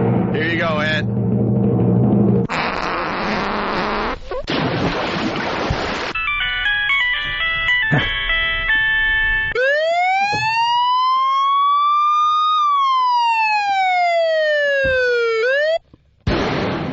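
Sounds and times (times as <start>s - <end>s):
siren wailing: 9.5s - 15.8s.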